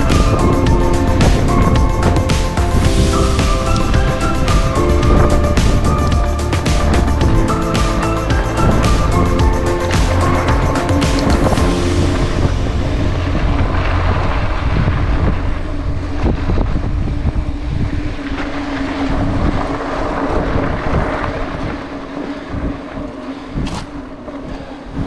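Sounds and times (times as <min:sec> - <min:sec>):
wind buffeting microphone: 0:00.0 - 0:18.4.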